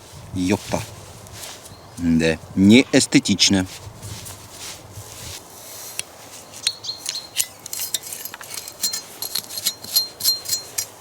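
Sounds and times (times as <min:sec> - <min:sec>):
metallic clinks and taps: 0:06.6 - 0:11.0.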